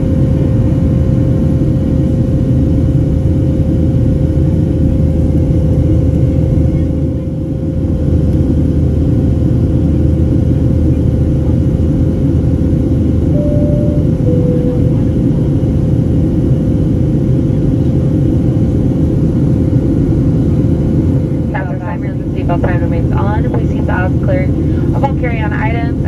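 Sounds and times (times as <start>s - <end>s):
airliner cabin engine rumble: 0.0s - 26.0s
cabin chime: 13.4s - 15.2s.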